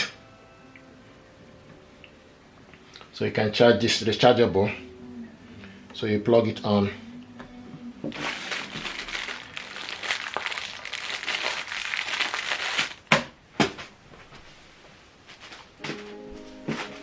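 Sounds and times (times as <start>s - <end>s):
plastic packaging crinkling: 8.1s - 13.2s.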